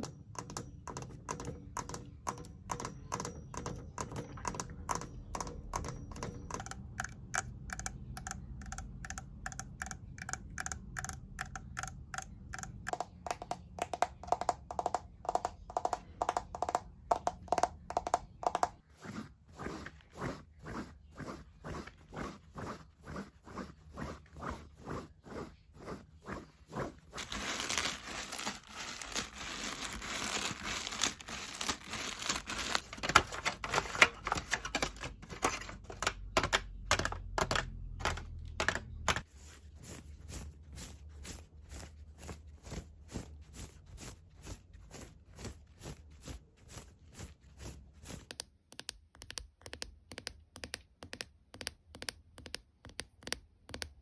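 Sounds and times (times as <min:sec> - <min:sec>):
material crinkling and tearing: 0:26.9 - 0:35.6.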